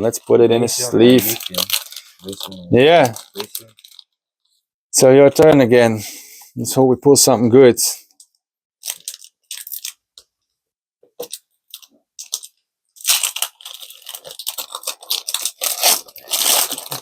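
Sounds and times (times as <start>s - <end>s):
foil wrapper crinkling: 0.2s - 4.2s, 8.8s - 10.0s, 11.2s - 17.0s.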